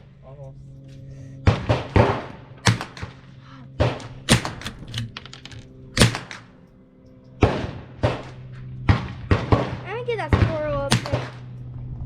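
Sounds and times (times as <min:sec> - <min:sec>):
rifle gunshots: 0:01.5 - 0:06.6, 0:10.9 - 0:11.4.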